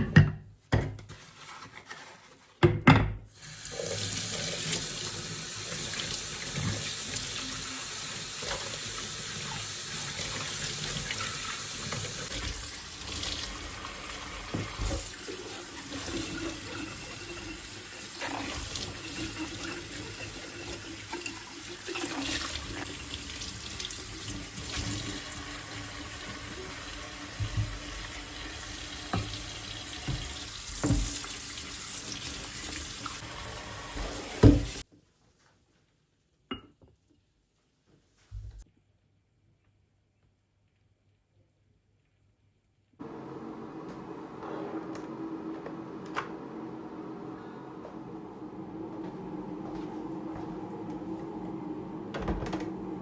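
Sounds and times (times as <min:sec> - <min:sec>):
tap running into sink: 0:11.8 - 0:16.8, 0:20.6 - 0:33.2, 0:33.8 - 0:34.8.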